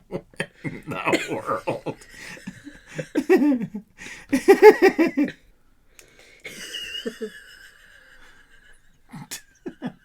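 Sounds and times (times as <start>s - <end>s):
person laughing: 0.1s - 5.3s.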